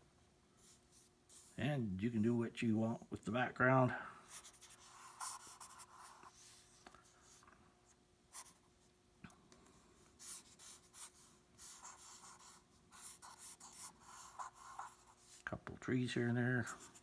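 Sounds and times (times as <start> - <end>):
drawing tool scratching paper: 4.3 - 6.7, 10.2 - 15.4.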